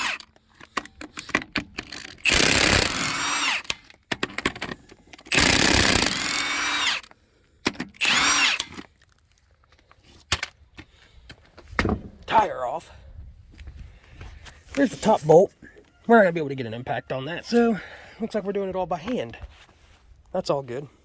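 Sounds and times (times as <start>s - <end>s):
impact wrench whining: 0.0s - 8.9s.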